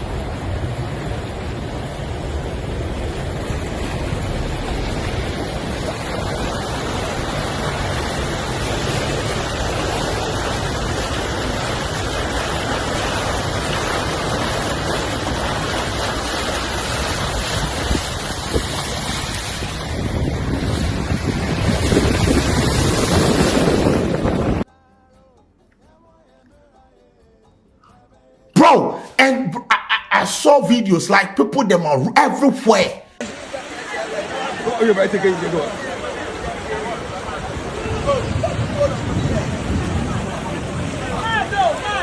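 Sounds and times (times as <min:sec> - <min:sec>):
floodwater rushing: 0:00.0 - 0:24.6, 0:28.6 - 0:42.0
wind noise on microphone: 0:00.0 - 0:24.7, 0:36.4 - 0:41.7.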